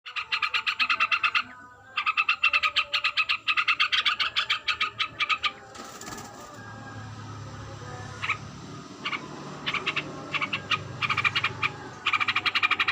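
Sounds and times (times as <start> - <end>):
bird rapid chattering call: 9.0 - 12.9.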